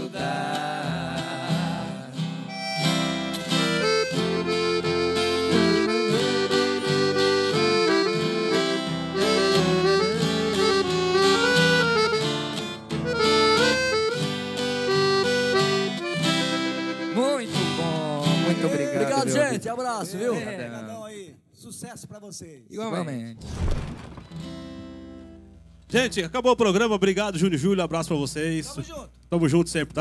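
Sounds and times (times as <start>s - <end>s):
guitar accompaniment: 0.0s - 19.6s, 24.1s - 26.8s
accordion melody: 2.3s - 19.5s.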